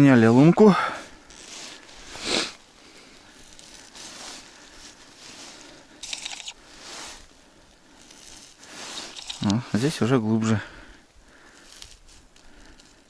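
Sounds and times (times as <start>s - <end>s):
rustling and crunching handling: 0.9s - 13.0s.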